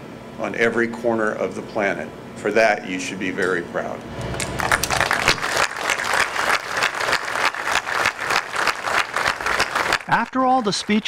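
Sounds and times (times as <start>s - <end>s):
crowd applauding: 4.4s - 11.0s.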